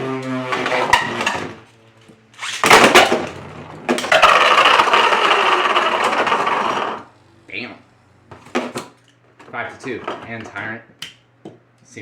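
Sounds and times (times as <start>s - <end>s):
spinning tops grinding and scraping: 2.4s - 7.1s.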